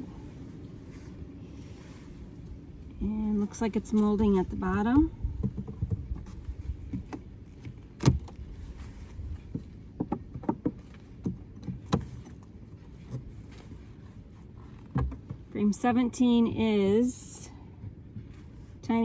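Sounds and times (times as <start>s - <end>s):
wind rumble on microphone: 0.0s - 19.0s
wooden frames clicking and knocking: 5.3s - 13.8s, 14.6s - 15.5s.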